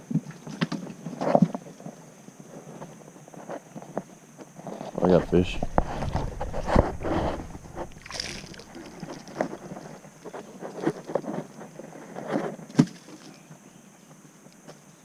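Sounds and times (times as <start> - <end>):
knocks and thumps in a boat: 5.4 - 10.0.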